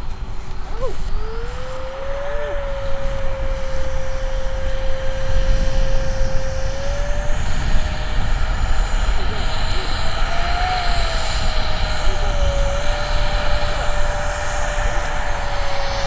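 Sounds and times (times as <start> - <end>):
electric ducted fans whining: 0.0 - 16.0
wind rumble on microphone: 0.0 - 16.0.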